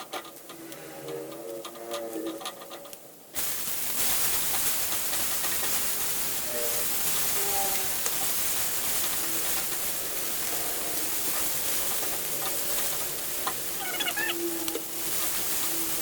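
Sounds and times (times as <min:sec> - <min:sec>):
food sizzling in hot oil: 0:03.4 - 0:16.0.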